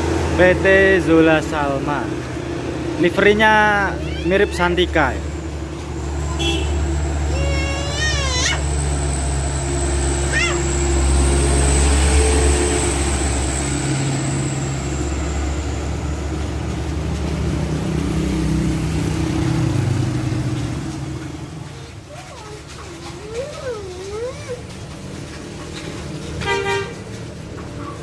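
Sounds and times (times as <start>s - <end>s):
diesel bus engines running: 0.0s - 28.0s
short rising squeals: 3.8s - 15.9s.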